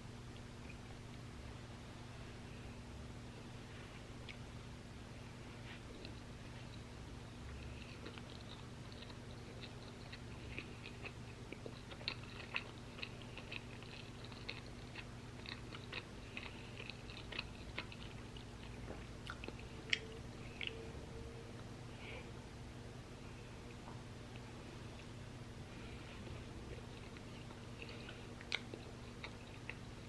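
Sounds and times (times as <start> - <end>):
chewing crunchy fries: 5.6 - 21.0, 24.3 - 30.0.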